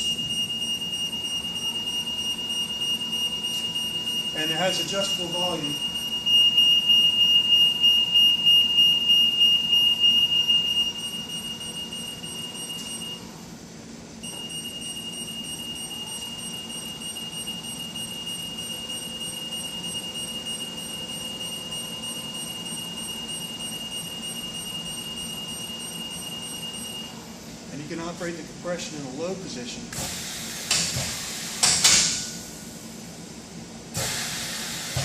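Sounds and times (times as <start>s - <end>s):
high-pitched warning tone: 0.0s - 13.3s, 14.2s - 27.2s.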